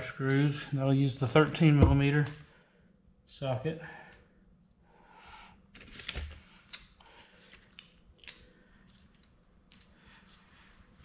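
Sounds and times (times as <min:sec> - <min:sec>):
metallic clicks of small bolts: 0:07.7 - 0:10.0.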